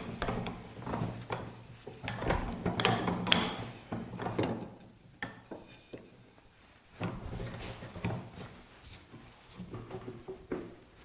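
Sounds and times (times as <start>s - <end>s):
clicks and knocks of handling: 0.0s - 6.2s.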